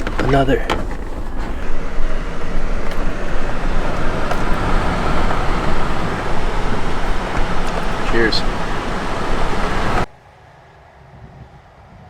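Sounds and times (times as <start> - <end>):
vehicle engine and road noise: 0.0 - 10.2.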